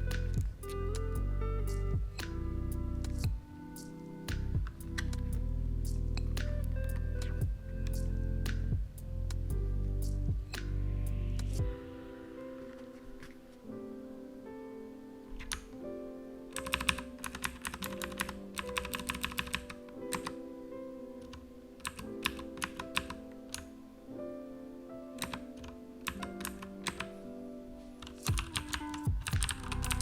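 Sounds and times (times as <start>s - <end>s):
background music sustained notes: 0.0s - 30.0s
mechanical keyboard key clicks: 16.6s - 20.3s, 21.3s - 23.7s, 25.2s - 27.1s, 28.0s - 30.0s.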